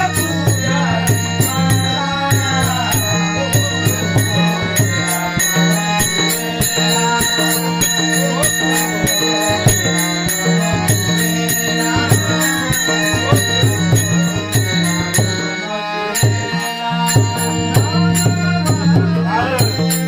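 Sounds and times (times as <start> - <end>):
hand cymbals striking: 0.0 - 20.0
held sustained tones: 0.0 - 20.0.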